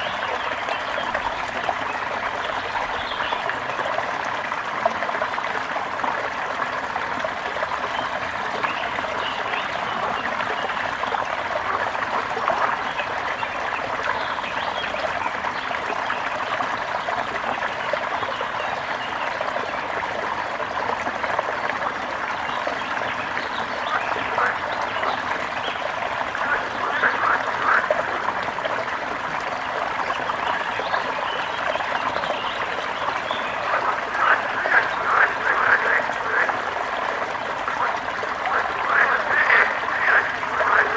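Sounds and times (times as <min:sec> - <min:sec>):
brook water babbling: 0:00.0 - 0:40.9.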